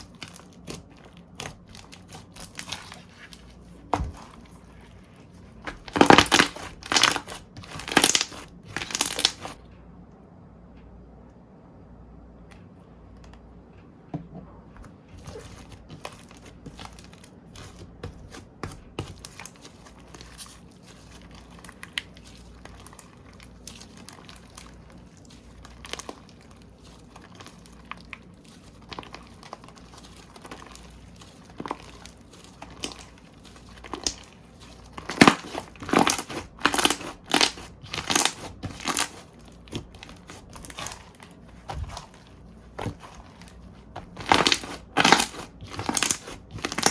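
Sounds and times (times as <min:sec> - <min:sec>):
slime clicking and popping: 0:31.5 - 0:42.1, 0:42.8 - 0:46.9.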